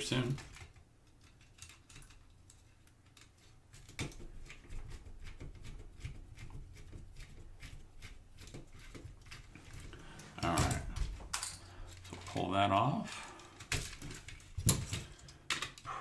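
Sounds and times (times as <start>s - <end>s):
clicks and taps of small parts: 13.6s - 15.9s.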